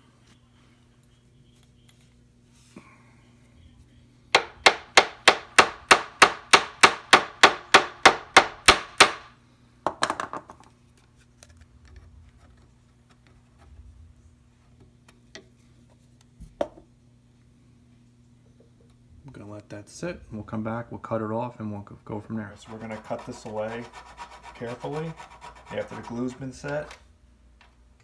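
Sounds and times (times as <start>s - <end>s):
hammer tapping wooden stick: 4.4s - 9.2s.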